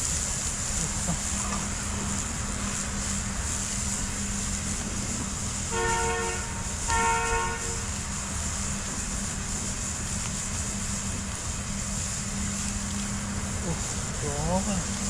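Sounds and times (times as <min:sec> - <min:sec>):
train horn blasts: 0:05.7 - 0:08.1.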